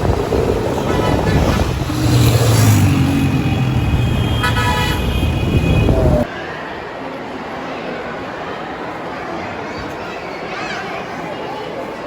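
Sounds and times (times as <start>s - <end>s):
road traffic engine noise: 0.0s - 6.3s
vehicle horn honking: 0.7s - 6.3s.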